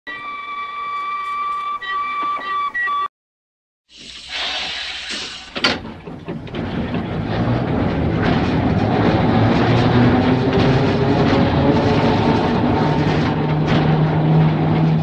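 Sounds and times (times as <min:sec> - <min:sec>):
hiss: 0:03.9 - 0:05.6
tram rumbling on rails: 0:04.1 - 0:15.0.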